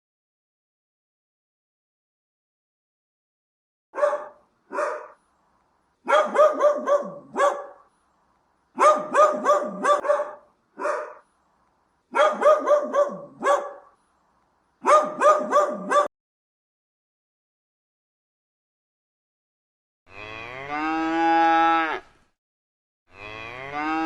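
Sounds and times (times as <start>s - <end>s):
dog barking: 4.0s - 5.2s, 6.1s - 7.9s, 8.8s - 11.3s, 12.1s - 14.0s, 14.8s - 16.1s.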